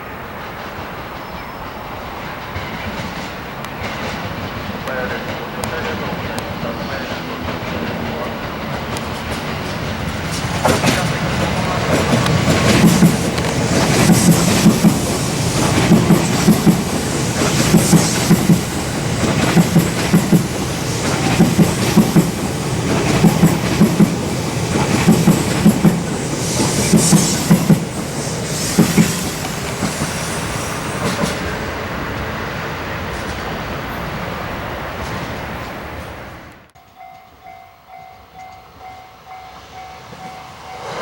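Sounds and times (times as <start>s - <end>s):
train rumble: 0.0s - 36.7s
train wheels clacking over rail joints: 2.4s - 31.6s.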